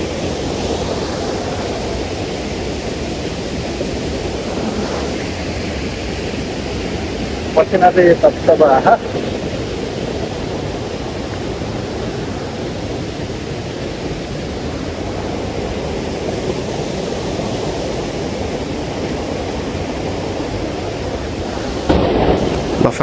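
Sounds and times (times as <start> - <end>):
waterfall rushing: 21.9 - 23.0.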